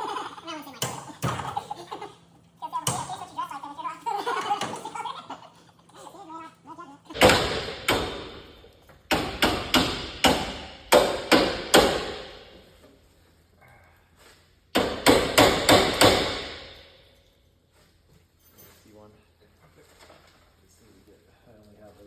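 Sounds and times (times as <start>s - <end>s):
hammer striking metal: 7.2s - 12.6s, 14.8s - 17.1s.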